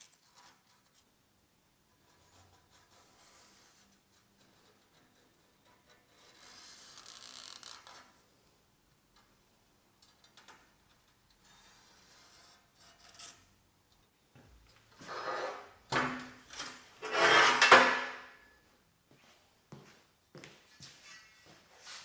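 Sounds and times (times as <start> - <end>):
rasping scrapes of metal: 2.1 - 8.0, 11.4 - 13.5, 15.0 - 15.8, 16.5 - 18.3.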